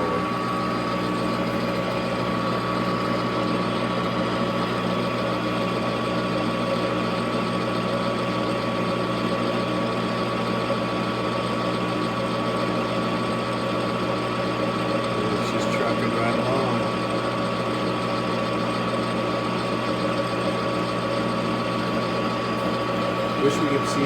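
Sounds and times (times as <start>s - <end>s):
metal lathe gear hum and whine: 0.0s - 24.0s.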